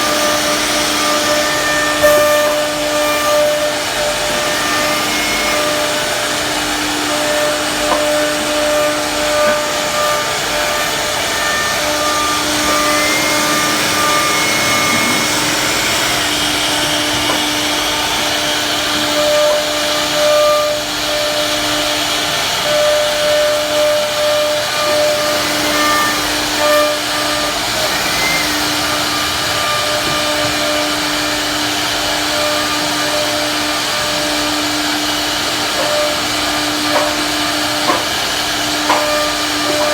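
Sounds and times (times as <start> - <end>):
router spindle cutting wood: 0.0 - 39.9
low motor hum: 3.8 - 20.0
short rising whines: 7.4 - 18.5.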